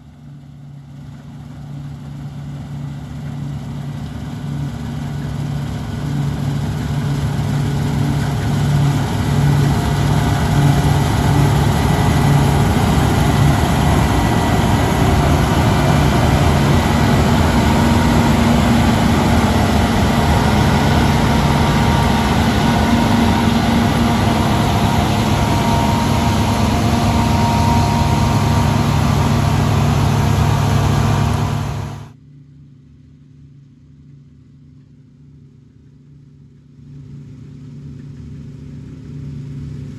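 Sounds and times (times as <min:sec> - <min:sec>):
heavy machinery engine running: 0:05.2 - 0:32.1
faint hum: 0:08.0 - 0:32.1.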